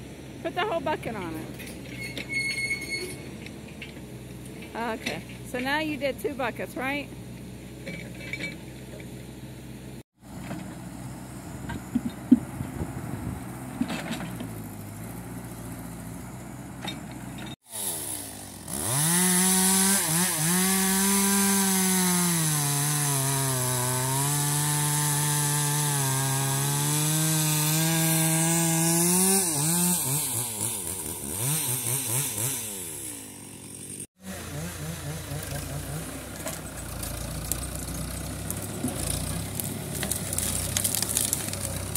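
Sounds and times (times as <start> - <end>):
small engine revving under load: 17.7 - 41.9.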